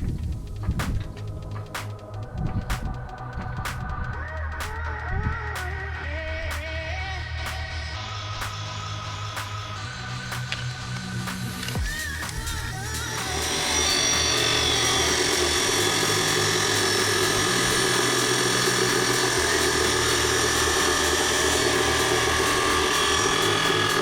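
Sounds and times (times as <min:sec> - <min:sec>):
electronic music with pulsing bass: 0:00.0 - 0:24.0
power tool high whine: 0:10.0 - 0:24.0.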